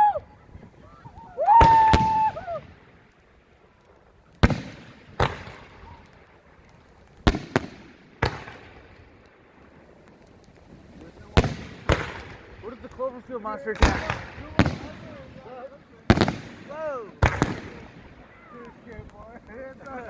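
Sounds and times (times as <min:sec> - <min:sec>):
person shouting: 0:00.0 - 0:00.2, 0:01.3 - 0:02.6
firework shells booming: 0:00.5 - 0:03.3, 0:04.3 - 0:20.0.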